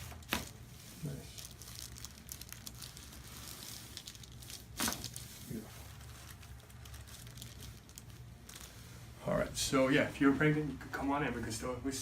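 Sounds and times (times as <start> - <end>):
rustling of cloth and paper: 0.0 - 9.2.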